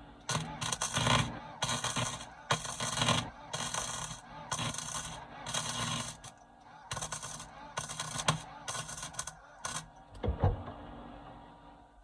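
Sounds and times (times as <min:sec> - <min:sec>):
welder crackling hiss: 0:00.3 - 0:06.3, 0:06.9 - 0:09.8.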